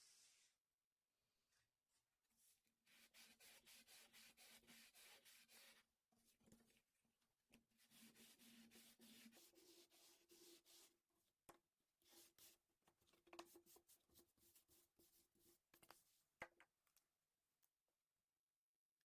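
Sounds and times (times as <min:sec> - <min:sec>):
scratching strokes on paper: 0:02.4 - 0:05.9, 0:07.8 - 0:11.0, 0:12.0 - 0:12.6.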